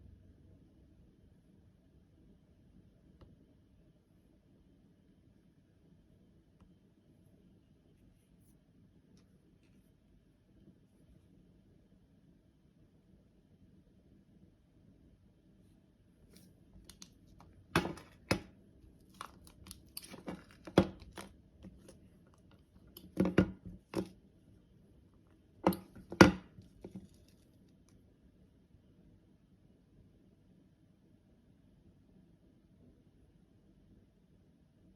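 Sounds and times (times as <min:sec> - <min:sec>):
sharp clicks and rustles: 0:16.3 - 0:24.2, 0:25.6 - 0:27.5.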